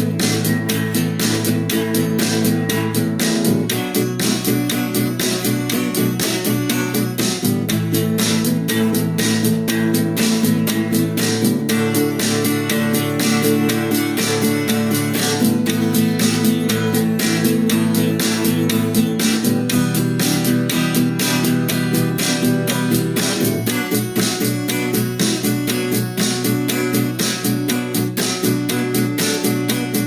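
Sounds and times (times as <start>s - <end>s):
drum machine beat: 0.0s - 30.0s
instrumental rock music: 0.0s - 30.0s.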